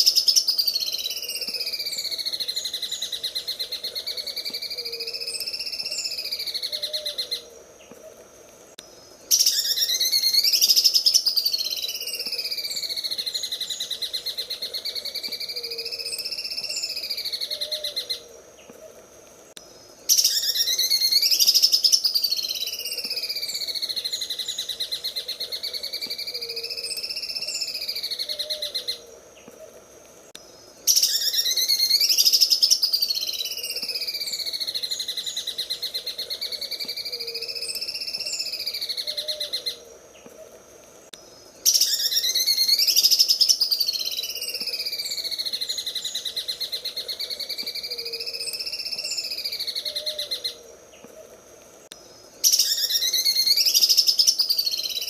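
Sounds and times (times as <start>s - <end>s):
bird singing rattling trill: 20.1s - 29.0s, 30.9s - 39.8s.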